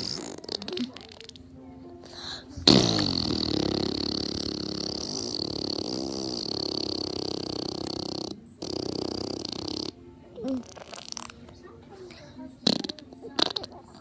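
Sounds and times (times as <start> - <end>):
fart sound: 0.0 - 1.3, 2.6 - 11.5, 12.6 - 13.8.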